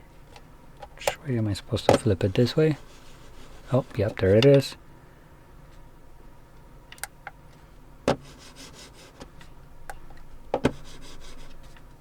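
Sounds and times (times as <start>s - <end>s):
mouse rubbing against hand and desk: 2.8s - 4.0s, 8.3s - 9.2s, 10.7s - 11.6s.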